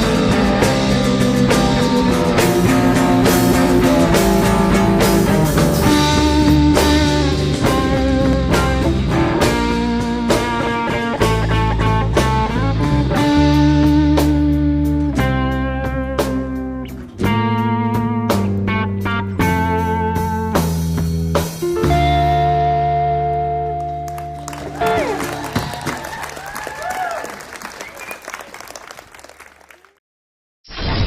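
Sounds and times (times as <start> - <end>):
psychedelic blues rock music: 0.0 - 25.8.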